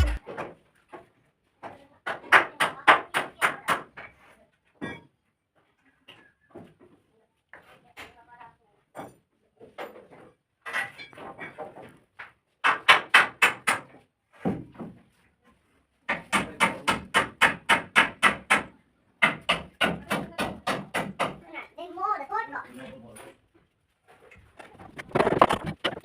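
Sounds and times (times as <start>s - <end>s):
hammer striking timber: 16.1s - 21.4s.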